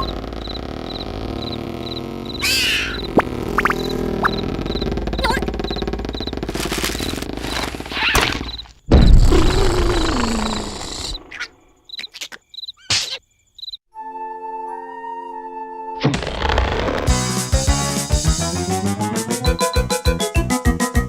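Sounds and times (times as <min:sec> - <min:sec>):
short squeaks: 0:00.0 - 0:08.7
cricket chirping: 0:00.0 - 0:13.8.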